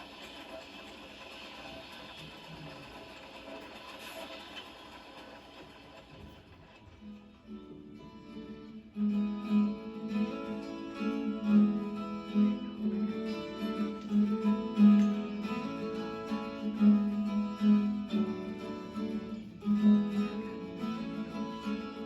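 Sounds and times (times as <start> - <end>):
acoustic guitar strumming: 7.0 - 22.0.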